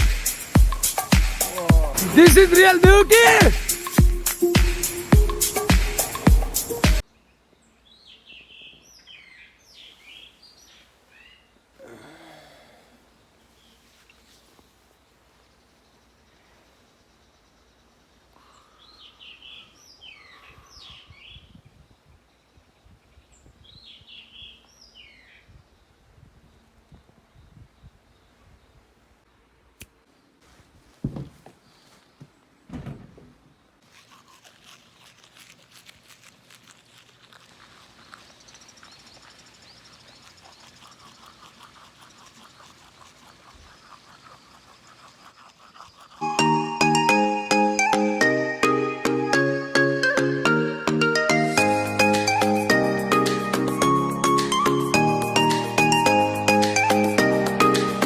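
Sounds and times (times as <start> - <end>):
loud music: 0.0 - 7.0
songbird singing: 0.0 - 12.8, 13.5 - 30.4, 31.0 - 58.0.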